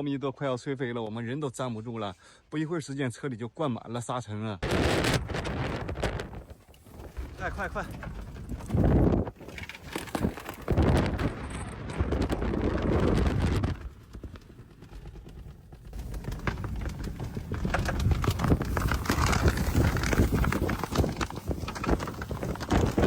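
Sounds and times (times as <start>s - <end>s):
strong wind buffeting microphone: 4.6s - 23.0s.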